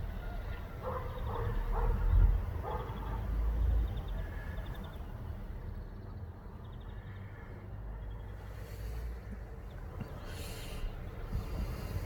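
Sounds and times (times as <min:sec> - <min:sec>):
low rumbling background noise: 0:00.0 - 0:12.0.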